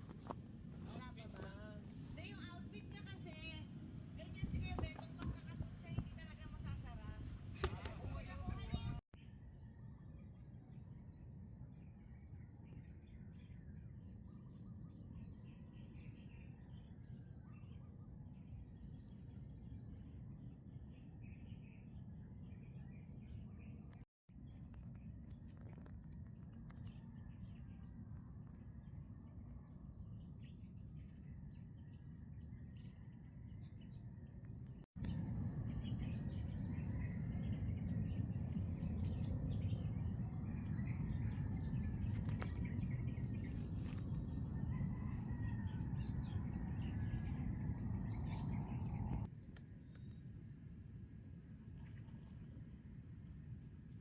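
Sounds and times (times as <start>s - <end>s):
low outdoor rumble: 0.0s - 9.0s, 35.0s - 49.3s
crickets and insects trilling: 9.2s - 54.0s.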